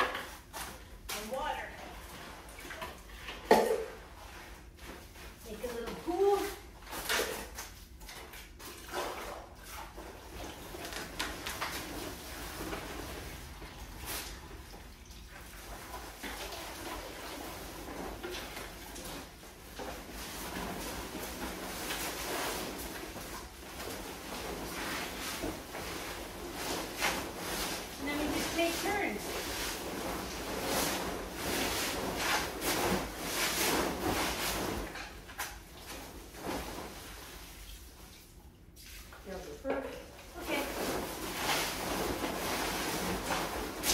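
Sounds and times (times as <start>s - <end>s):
concrete mix scraping on tarp: 15.6s - 37.5s, 40.4s - 43.9s.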